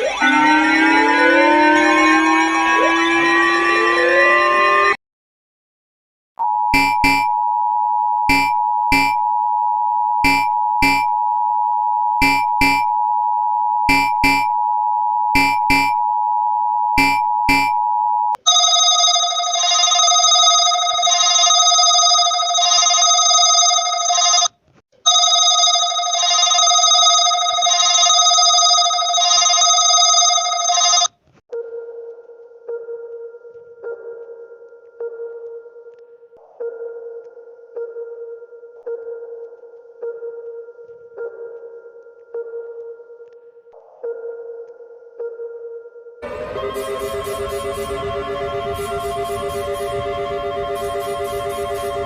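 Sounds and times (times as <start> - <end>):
shrill pulsing chord: 0.0 - 5.0, 46.2 - 52.0
two-note attention tone: 0.0 - 5.0, 46.2 - 52.0
short blips: 6.8 - 7.4, 8.3 - 9.2, 10.2 - 11.1, 12.2 - 12.9, 13.9 - 14.6, 15.4 - 16.0, 17.0 - 17.8.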